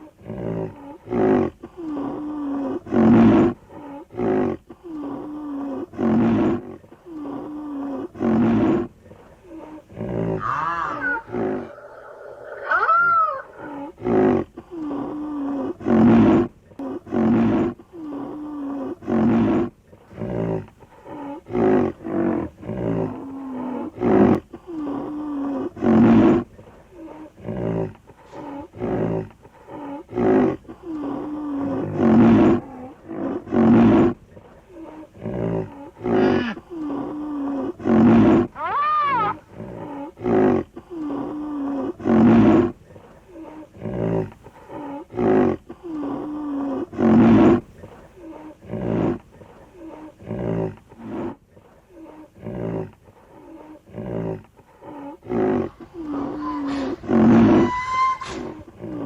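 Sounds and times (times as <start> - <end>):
low-pitched moans: 0.0 - 59.0
rhinoceros calling: 10.3 - 14.3, 27.0 - 59.0.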